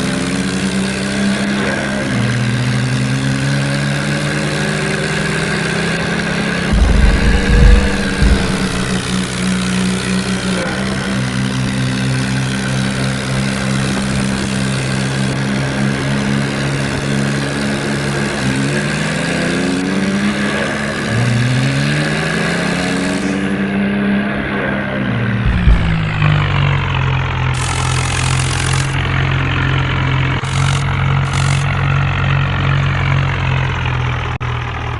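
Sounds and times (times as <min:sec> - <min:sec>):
heavy diesel engine revving: 0:00.0 - 0:34.9
loud low thumps: 0:06.7 - 0:09.6, 0:25.4 - 0:27.2.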